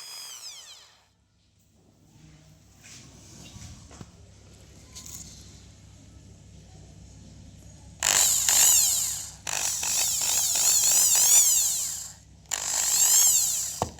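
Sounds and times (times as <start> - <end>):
electric drill whining: 0.0 - 1.1, 8.0 - 13.9.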